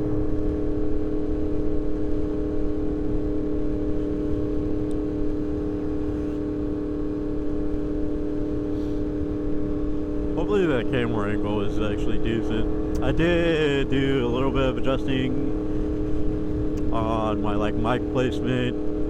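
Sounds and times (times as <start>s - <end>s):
low rumble: 0.0s - 19.0s
motorcycle engine running: 0.0s - 19.0s.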